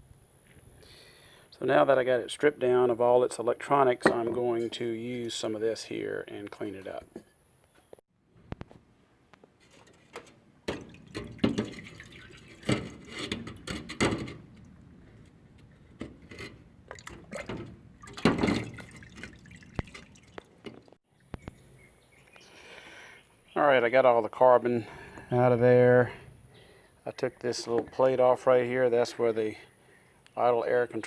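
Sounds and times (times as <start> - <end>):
liquid splashing and dripping: 10.7 - 13.0, 16.9 - 21.0.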